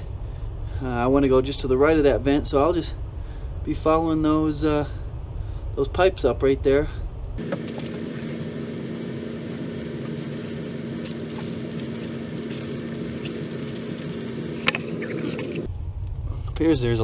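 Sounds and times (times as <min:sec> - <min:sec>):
small clicks and rustles: 0:07.4 - 0:15.7
steady machine hum: 0:07.4 - 0:15.7.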